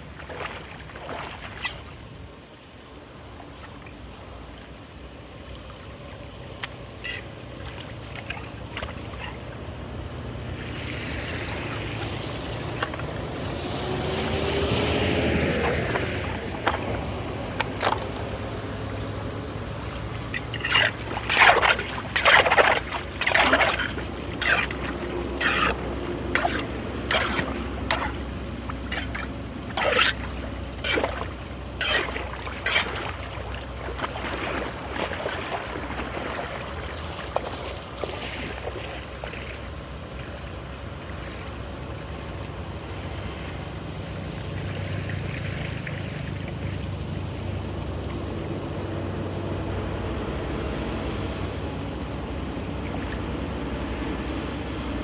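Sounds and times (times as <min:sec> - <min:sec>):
water splashing: 0:00.0 - 0:48.3
trickling running water: 0:10.7 - 0:39.3.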